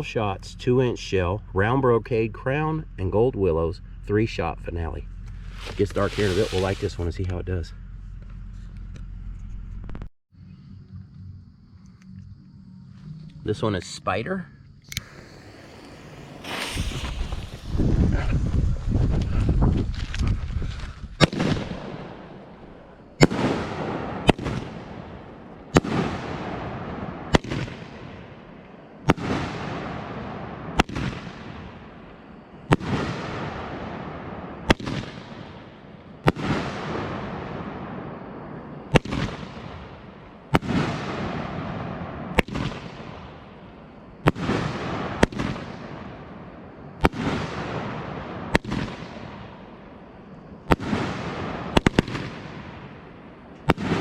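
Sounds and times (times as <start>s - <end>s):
firework shots booming: 5.2s - 7.2s, 15.0s - 20.4s, 21.2s - 50.0s, 50.6s - 54.0s
firework crackling hiss: 5.3s - 7.2s, 14.9s - 25.0s, 50.6s - 52.8s.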